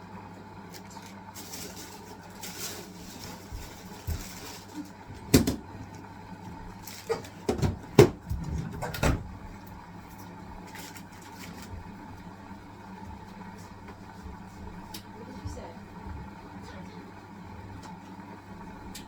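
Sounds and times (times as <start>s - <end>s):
washing machine low hum: 0.0s - 19.0s
washing machine knocks and clunks: 5.0s - 5.9s, 6.6s - 9.6s.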